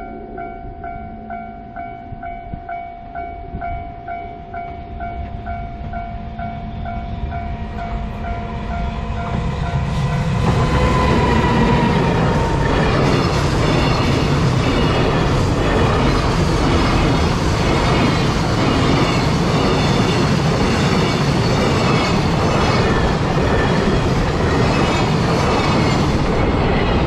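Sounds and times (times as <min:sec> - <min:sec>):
freight train rumble and wheel noise: 0:00.0 - 0:27.0
level-crossing warning bell: 0:00.0 - 0:27.0.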